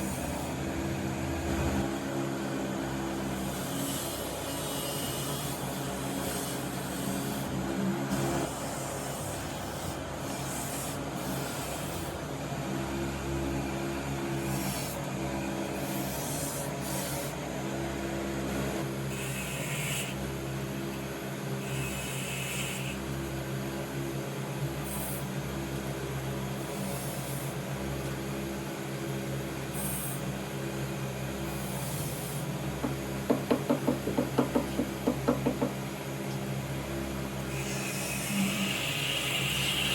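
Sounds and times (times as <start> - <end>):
tool scraping wood: 31.7 - 35.8
sharp knocks: 32.8 - 35.8.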